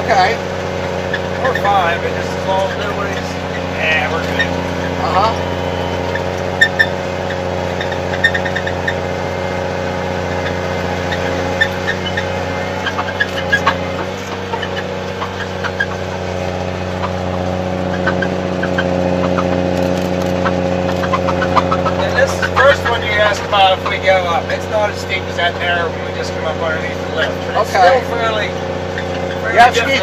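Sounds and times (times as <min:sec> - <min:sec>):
snowcat engine running: 0:00.0 - 0:30.0
small clicks and rattles: 0:19.7 - 0:21.2.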